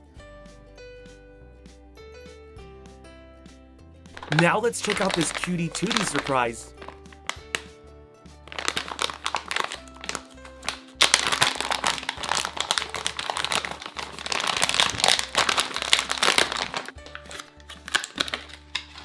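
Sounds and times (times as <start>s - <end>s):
plastic packaging crinkling and tearing: 4.2s - 7.7s, 8.5s - 19.0s.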